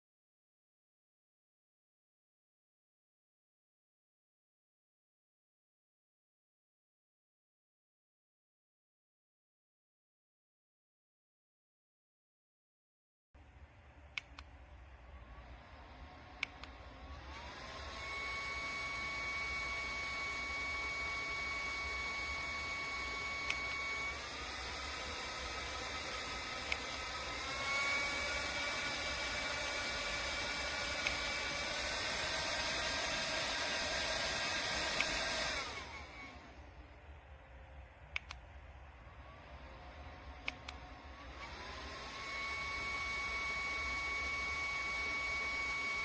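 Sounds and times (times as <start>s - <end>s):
handheld fan motor whirring: 15.4s - 36.8s, 39.2s - 46.0s.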